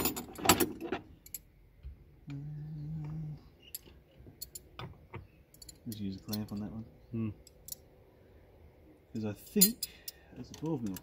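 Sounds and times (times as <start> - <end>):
metal spanners clinking: 0.0 - 1.5, 3.6 - 4.8, 5.5 - 6.8, 9.4 - 11.0
low steady hum: 0.0 - 11.0.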